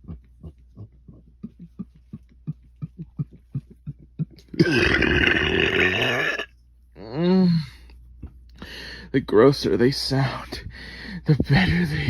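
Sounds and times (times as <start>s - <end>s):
person burping: 4.5s - 6.5s.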